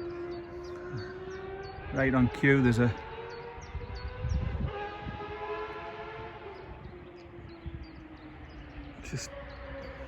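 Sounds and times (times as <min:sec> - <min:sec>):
motorbikes passing by: 0:00.0 - 0:10.0.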